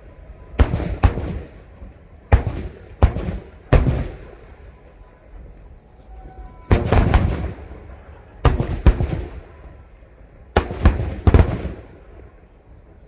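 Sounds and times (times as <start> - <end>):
fireworks bursting: 6.4 - 9.7.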